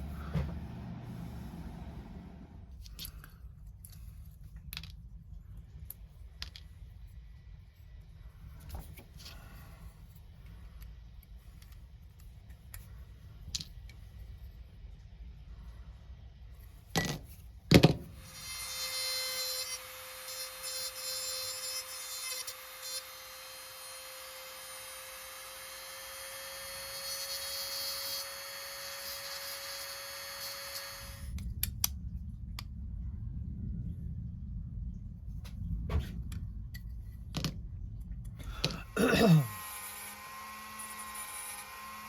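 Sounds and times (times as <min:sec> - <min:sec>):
rotary tool whining: 0:18.2 - 0:31.3, 0:38.8 - 0:42.0.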